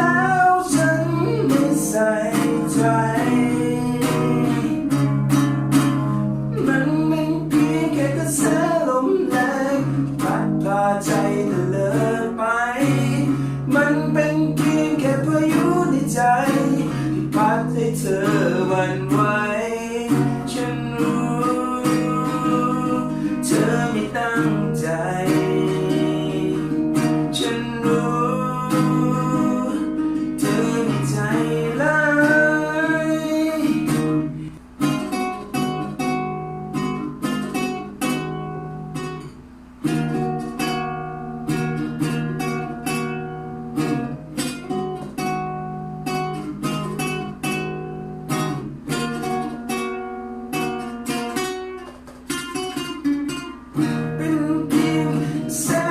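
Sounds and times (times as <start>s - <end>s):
wavering melody line: 0.0s - 3.5s
acoustic guitar playing: 0.0s - 55.9s.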